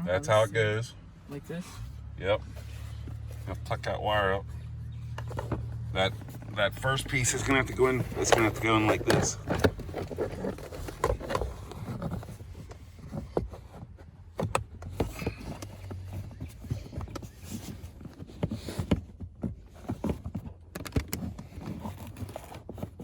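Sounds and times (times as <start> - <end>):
plastic trim clicks and scrapes: 5.0 - 23.0.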